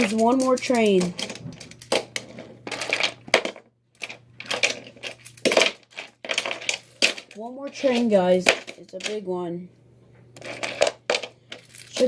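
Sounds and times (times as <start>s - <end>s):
small hard objects clattering: 0.0s - 9.2s, 10.4s - 12.0s.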